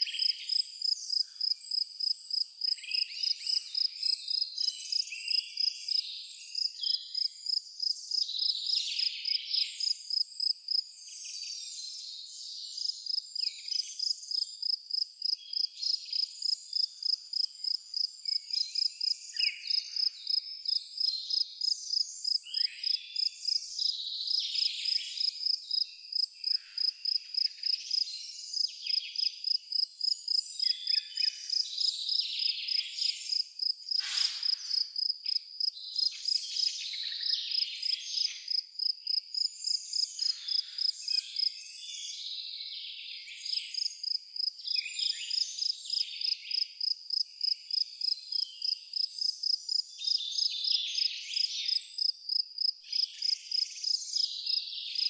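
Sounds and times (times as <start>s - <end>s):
insect chirping: 0.0s - 11.6s, 12.8s - 41.6s, 43.4s - 55.0s.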